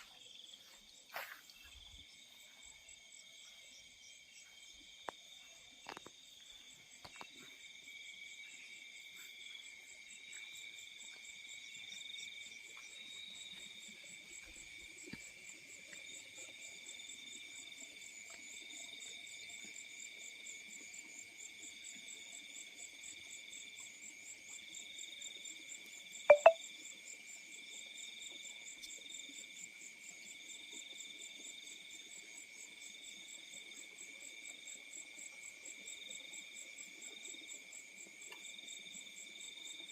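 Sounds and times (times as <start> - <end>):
insects chirping: 0.0 - 27.9.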